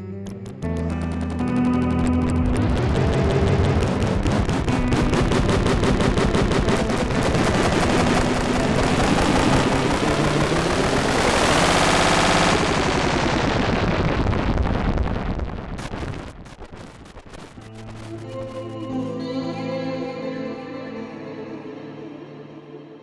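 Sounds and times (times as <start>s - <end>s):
electronic glitch music: 0.0s - 13.8s, 15.8s - 18.9s.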